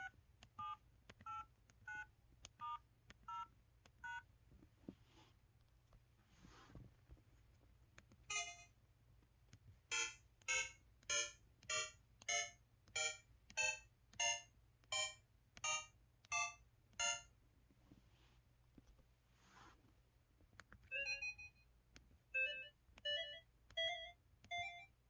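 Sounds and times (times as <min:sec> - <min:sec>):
phone keypad beeps: 0:00.0 - 0:04.2, 0:08.3 - 0:08.7, 0:09.9 - 0:17.3, 0:20.9 - 0:21.6, 0:22.4 - 0:24.9.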